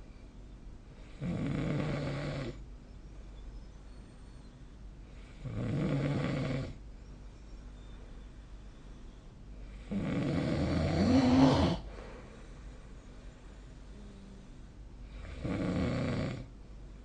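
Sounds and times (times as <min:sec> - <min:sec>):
person snoring: 0:09.8 - 0:11.9.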